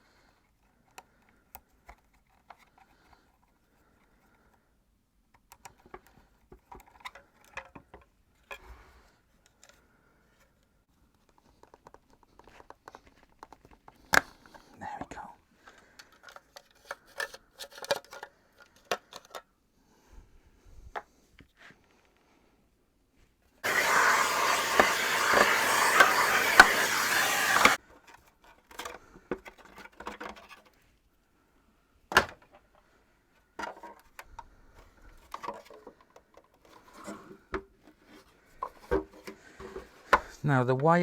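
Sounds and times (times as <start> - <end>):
loud rushing hiss: 23.6 - 27.8.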